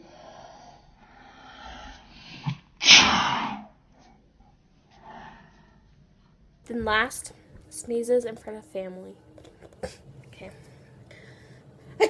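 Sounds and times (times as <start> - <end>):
girl sneezing: 2.8 - 3.5.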